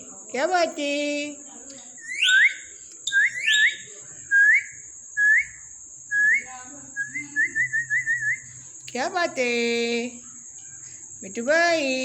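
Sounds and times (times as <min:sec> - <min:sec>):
short upward-gliding whistles: 0:02.0 - 0:08.5
small chirping whistles: 0:02.0 - 0:09.0.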